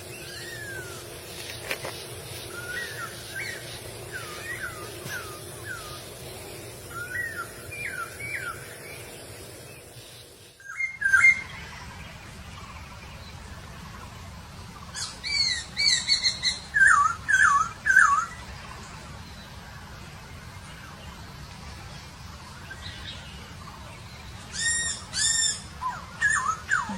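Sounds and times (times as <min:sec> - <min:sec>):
bird singing whistled notes: 0:00.0 - 0:01.1, 0:02.4 - 0:11.9, 0:15.0 - 0:18.5, 0:24.5 - 0:26.9.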